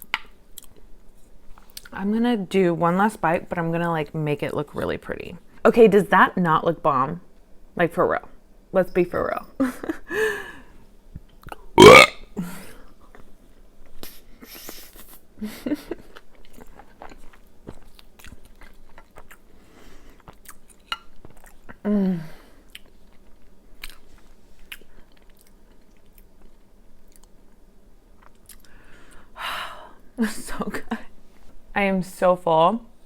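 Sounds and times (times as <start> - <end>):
woman chewing food: 15.7 - 21.8, 22.6 - 29.2.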